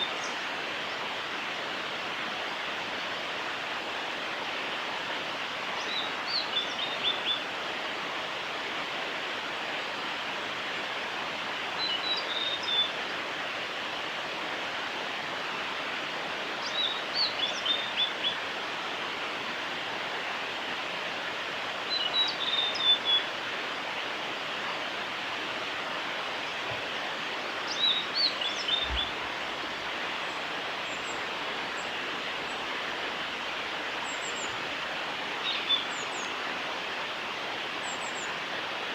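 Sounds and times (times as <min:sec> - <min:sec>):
bird whistling song: 0:11.8 - 0:12.9, 0:21.9 - 0:23.3, 0:27.7 - 0:29.1, 0:35.4 - 0:36.3.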